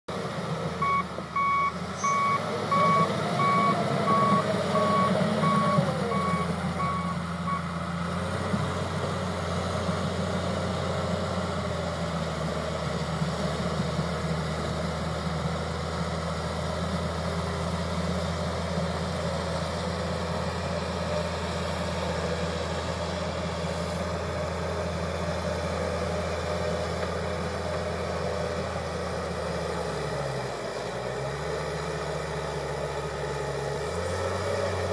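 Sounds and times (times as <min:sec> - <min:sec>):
diesel engine running: 0:00.1 - 0:34.9
backup alarm beeping: 0:00.8 - 0:07.6.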